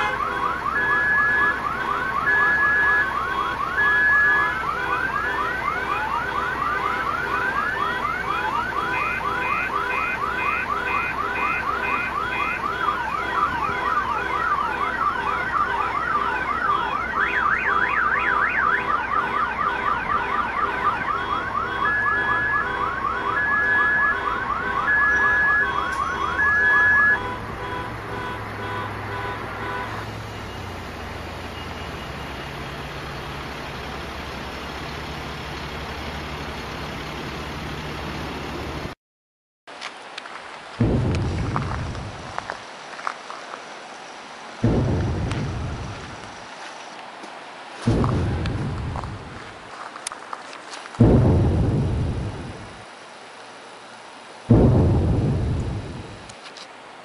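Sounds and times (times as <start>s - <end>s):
electronic alarm siren: 0.0s - 28.4s.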